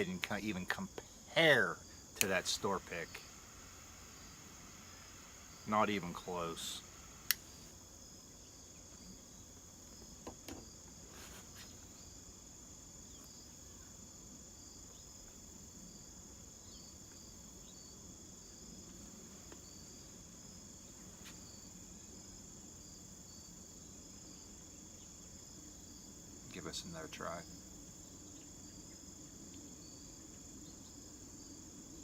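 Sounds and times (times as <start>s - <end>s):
insects trilling: 0.0s - 32.0s
light knocks: 10.2s - 10.7s.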